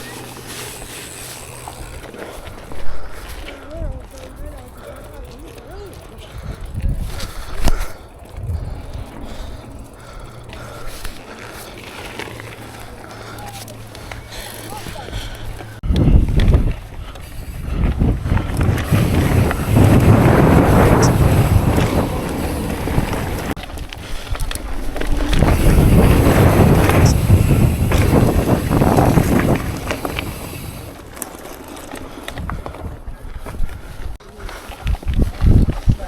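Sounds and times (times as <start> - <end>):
bike tyre and rattle noise: 0.0 - 36.0
wind rushing over microphone: 6.3 - 9.8, 15.8 - 31.0, 34.8 - 36.0.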